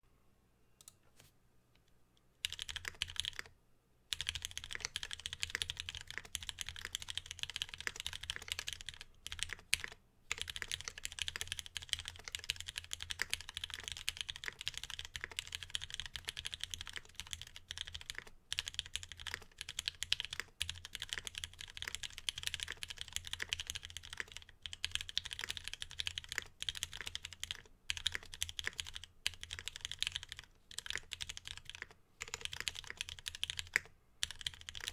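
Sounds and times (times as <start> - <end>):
fast mechanical keyboard typing: 2.4 - 3.5, 4.1 - 34.9.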